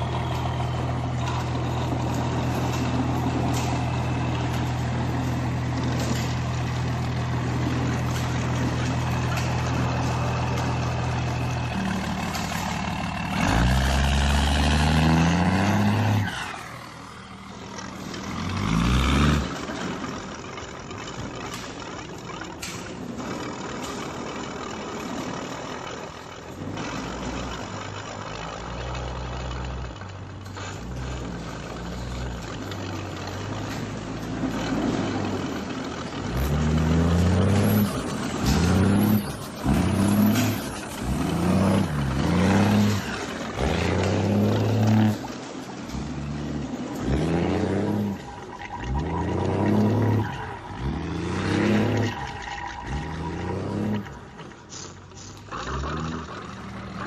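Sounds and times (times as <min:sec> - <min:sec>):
truck diesel engine revving: 0:00.0 - 0:57.0.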